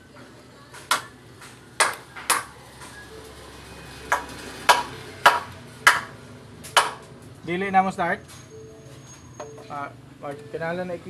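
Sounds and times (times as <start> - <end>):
sharp metallic taps: 0.9 - 2.5, 4.1 - 7.1.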